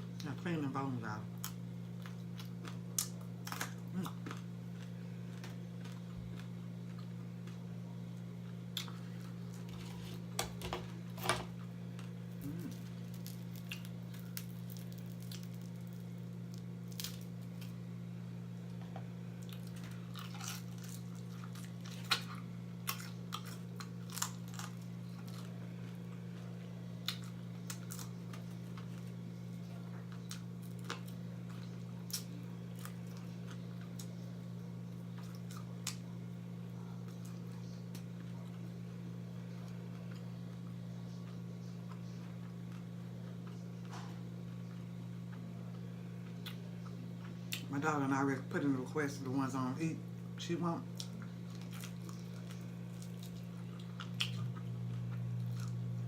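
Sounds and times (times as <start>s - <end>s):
steady low hum: 0.0s - 56.0s
chewing meat off bones: 1.3s - 10.4s, 11.5s - 17.8s, 18.7s - 47.8s, 50.2s - 56.0s
small crunches and clicks: 1.4s - 17.8s.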